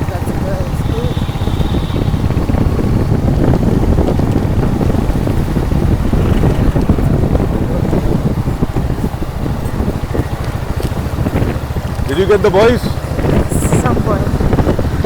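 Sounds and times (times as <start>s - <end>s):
ride noise: 0.0s - 15.0s
wind buffeting microphone: 0.0s - 15.0s.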